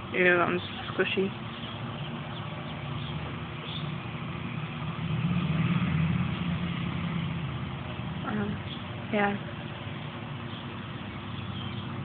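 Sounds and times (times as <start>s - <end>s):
motor vehicle engine hum: 0.0s - 12.0s.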